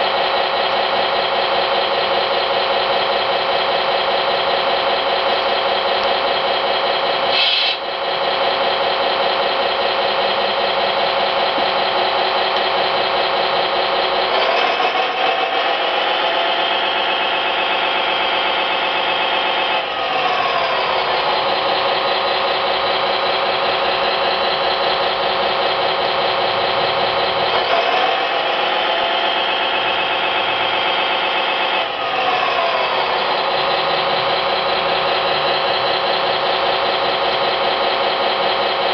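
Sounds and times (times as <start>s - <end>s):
simulated engine revving: 10.4s - 38.0s.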